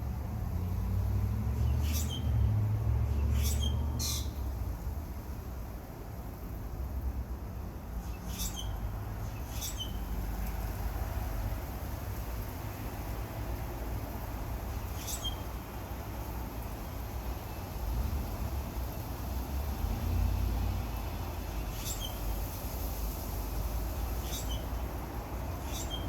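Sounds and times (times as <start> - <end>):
sharp bird calls: 1.6 - 2.5, 3.1 - 4.4, 8.0 - 10.1, 14.9 - 15.5, 24.2 - 26.0.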